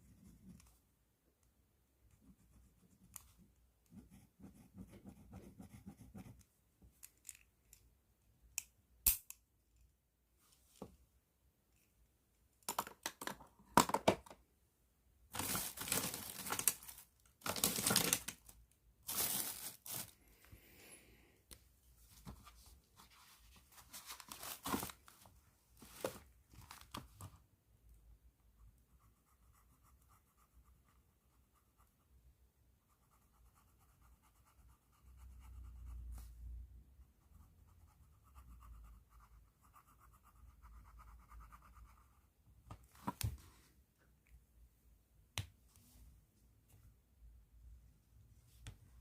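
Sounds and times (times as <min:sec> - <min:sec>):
plastic bag crinkling: 0:19.1 - 0:20.2.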